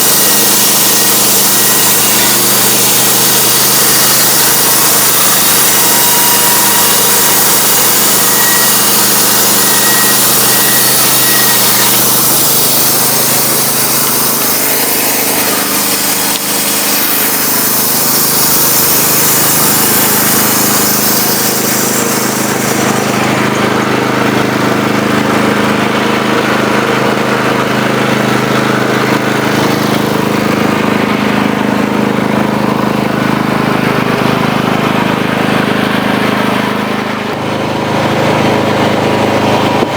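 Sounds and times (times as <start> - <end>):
saw blade cutting wood: 0.0 - 39.9
sawmill engine drone: 0.0 - 39.9.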